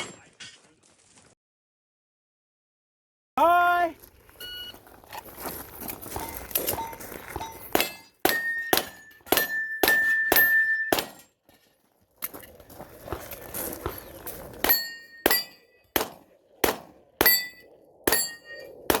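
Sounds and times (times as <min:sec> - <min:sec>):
steel plate ringing: 0:06.2 - 0:11.0, 0:14.6 - 0:15.9, 0:17.2 - 0:18.7
pistol shots: 0:07.7 - 0:11.3, 0:14.6 - 0:19.0.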